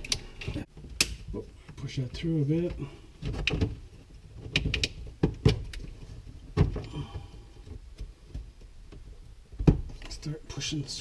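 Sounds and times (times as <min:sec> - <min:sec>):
plastic and wires knocking: 0:02.0 - 0:10.2.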